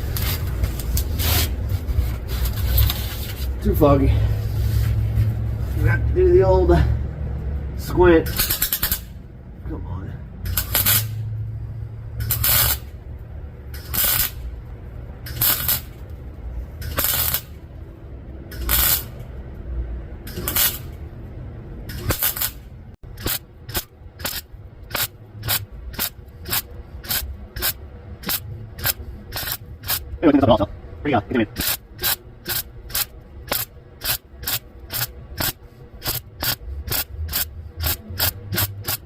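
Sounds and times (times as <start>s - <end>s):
welder crackling bursts: 8.3s - 9.2s, 10.5s - 11.3s, 12.2s - 13.0s, 13.7s - 14.5s, 15.2s - 16.1s, 16.8s - 17.6s, 18.5s - 19.2s, 20.3s - 21.0s, 21.8s - 30.2s, 31.4s - 39.0s.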